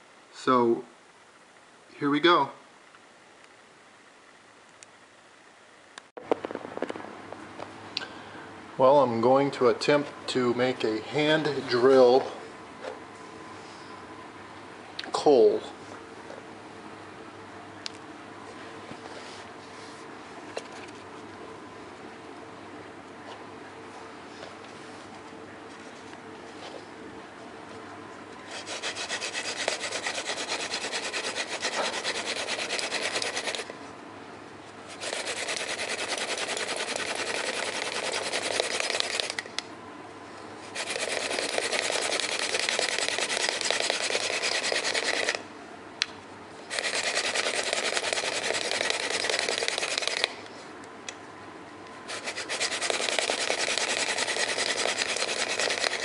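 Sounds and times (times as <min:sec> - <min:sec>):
spindle rasping on wooden board: 0:28.5 - 0:33.6, 0:34.9 - 0:39.3, 0:40.7 - 0:45.4, 0:46.7 - 0:50.3, 0:52.1 - 0:56.0.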